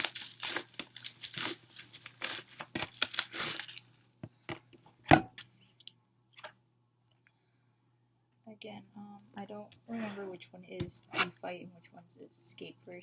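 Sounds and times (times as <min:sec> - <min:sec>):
packaging tearing and crinkling: 0:00.0 - 0:04.0.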